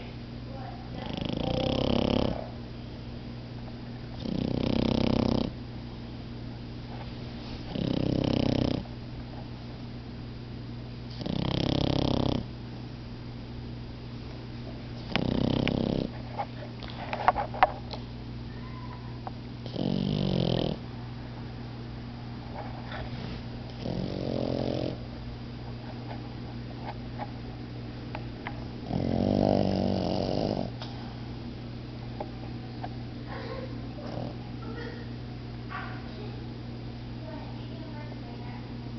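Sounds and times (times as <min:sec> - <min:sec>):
dog snoring: 0:00.9 - 0:02.5, 0:04.2 - 0:05.6, 0:07.7 - 0:08.9, 0:11.1 - 0:12.5, 0:15.0 - 0:16.2, 0:19.6 - 0:20.8, 0:23.7 - 0:25.0, 0:28.8 - 0:30.8, 0:34.1 - 0:34.4.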